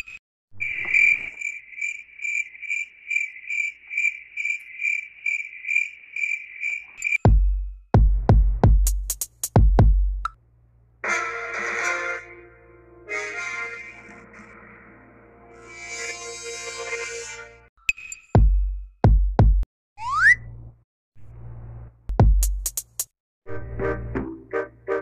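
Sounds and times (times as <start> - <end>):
crickets chirping: 0.6 - 7.2
music: 7.3 - 10.2, 11.0 - 17.7, 22.2 - 25.0.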